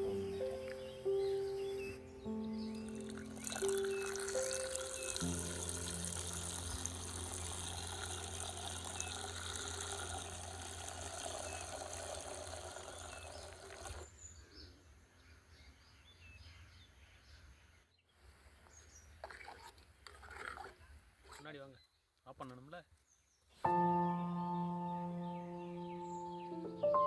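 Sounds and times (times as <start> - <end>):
water running: 2.5 - 14.1.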